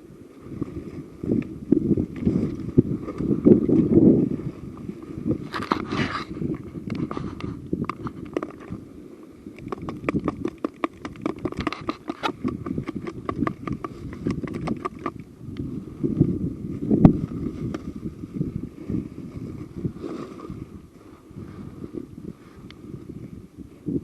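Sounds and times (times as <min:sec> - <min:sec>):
wind buffeting microphone: 0:00.0 - 0:24.0
rapid crackling clicks: 0:09.6 - 0:15.2.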